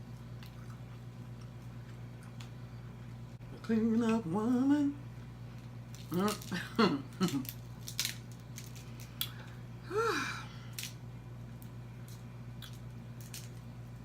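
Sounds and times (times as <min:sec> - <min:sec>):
steady low hum: 0:00.0 - 0:14.0
crab legs cracking and chewing: 0:05.6 - 0:09.6, 0:11.6 - 0:14.0
person humming: 0:06.1 - 0:07.4, 0:09.8 - 0:10.6.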